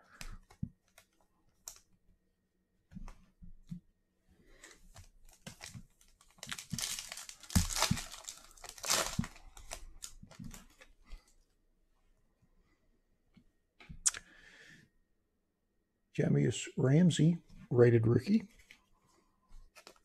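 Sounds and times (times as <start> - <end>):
plastic wrapper crinkling and tearing: 5.2 - 10.9.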